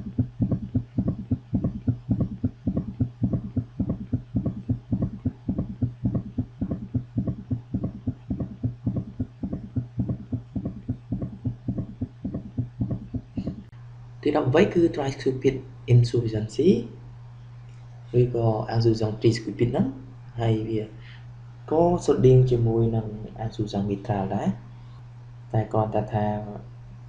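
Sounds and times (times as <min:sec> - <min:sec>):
galloping heartbeat thumps: 0:00.0 - 0:13.7
steady low hum: 0:00.0 - 0:27.0.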